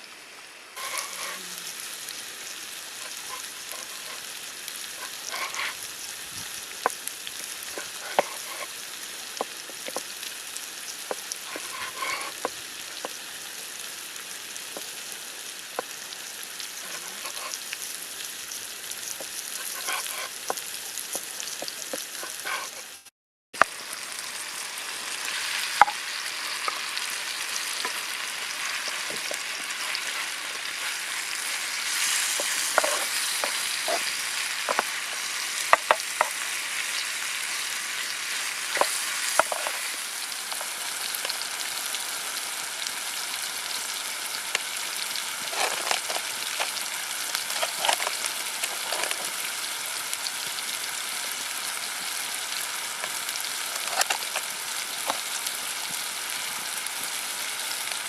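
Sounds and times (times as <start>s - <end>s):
food sizzling in a pan: 0.0s - 58.0s
utensil clicking against pan: 38.7s - 39.8s.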